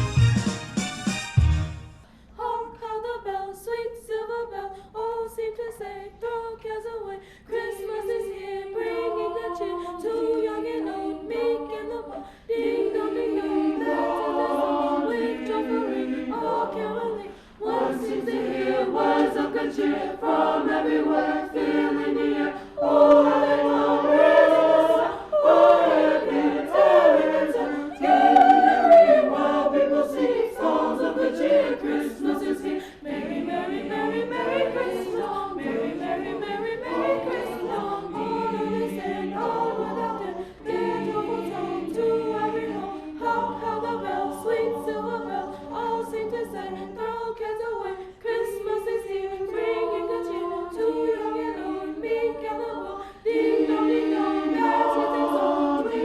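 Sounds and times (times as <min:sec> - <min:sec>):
choir singing: 0:01.4 - 0:56.0.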